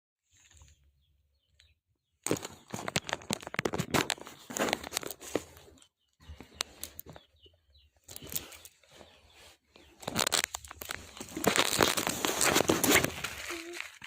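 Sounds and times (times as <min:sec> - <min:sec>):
packaging crinkling and tearing: 0:02.3 - 0:05.4, 0:10.0 - 0:14.0.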